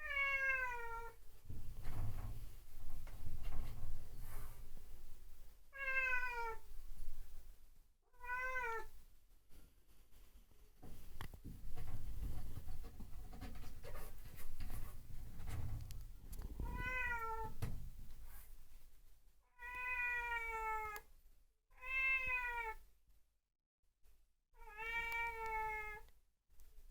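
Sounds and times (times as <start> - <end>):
cat meowing: 0.0 - 1.2, 5.8 - 6.6, 8.1 - 8.9, 16.6 - 17.6, 19.5 - 21.0, 21.7 - 22.8, 24.6 - 26.0.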